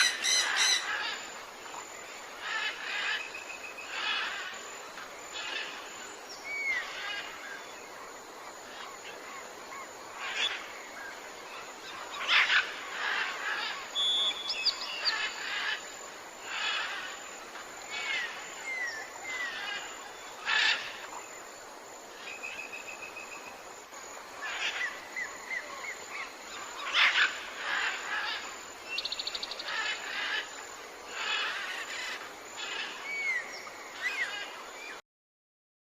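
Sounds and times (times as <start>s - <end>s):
bird trills: 0.0s - 1.1s
birds calling: 0.0s - 8.0s, 8.6s - 21.3s, 22.2s - 35.0s
insects hissing: 0.0s - 35.0s.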